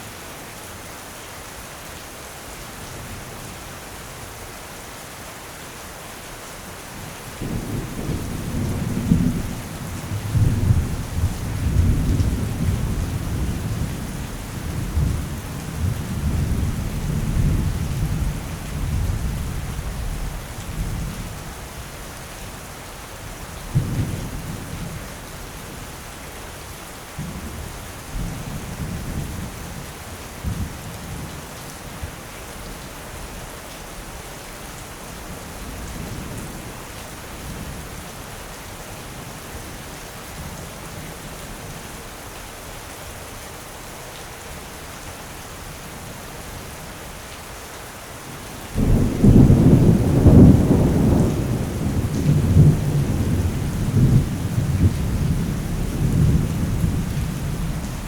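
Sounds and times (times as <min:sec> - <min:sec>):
steady rain: 0:00.0 - 0:58.0
thunder rumbling: 0:48.8 - 0:58.0.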